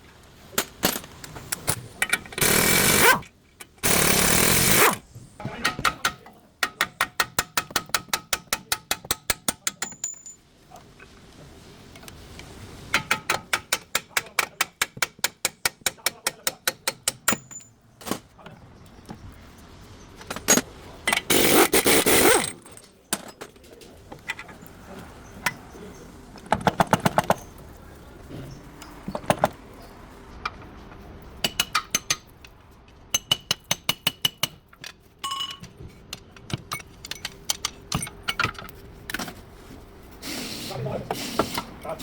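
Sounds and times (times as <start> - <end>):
ratchet wrench clicking: 2.4 - 3.2, 3.8 - 5.0, 21.1 - 22.6
metal clinks: 9.7 - 10.4, 17.2 - 17.8, 35.2 - 35.8.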